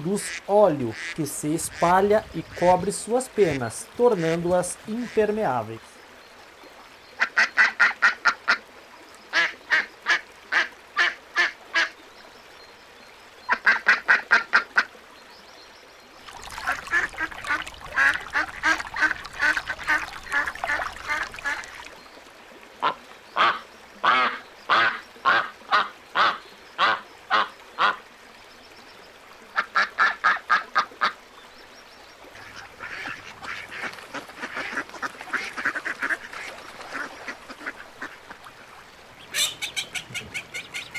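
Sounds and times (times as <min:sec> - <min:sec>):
ducks quacking: 0:00.0 - 0:05.6, 0:16.5 - 0:21.9, 0:22.8 - 0:28.0, 0:32.3 - 0:40.9.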